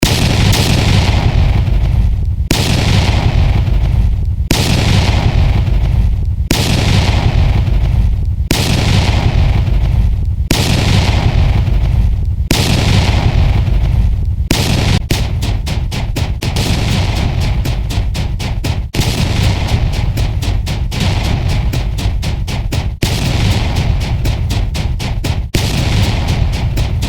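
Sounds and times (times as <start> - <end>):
explosion blasts with deep rumble: 0.0 - 15.6, 16.5 - 17.7, 19.0 - 21.8, 23.0 - 24.3, 25.6 - 26.9.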